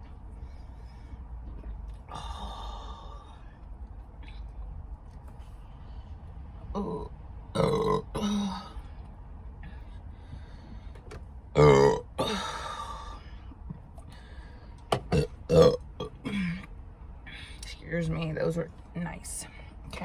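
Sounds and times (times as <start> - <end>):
woman burping: 6.9 - 8.7, 11.6 - 12.6, 15.1 - 16.7.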